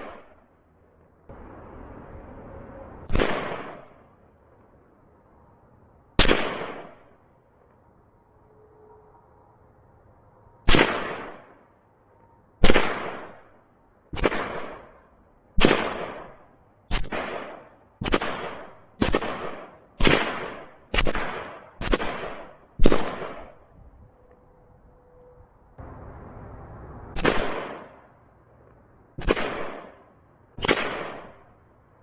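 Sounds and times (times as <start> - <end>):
gunshots with echo: 10.7 - 11.5, 14.2 - 14.9, 15.6 - 23.6, 27.2 - 28.0, 29.2 - 30.0, 30.6 - 31.4.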